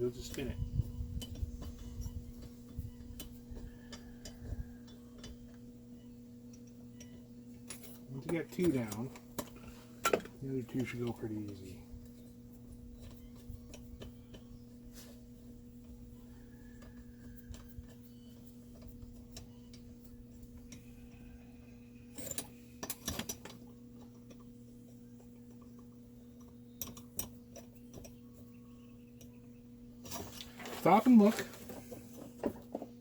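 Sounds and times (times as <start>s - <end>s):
steady low hum: 0.0s - 33.0s
metal tool clicks and clinks: 22.1s - 23.5s.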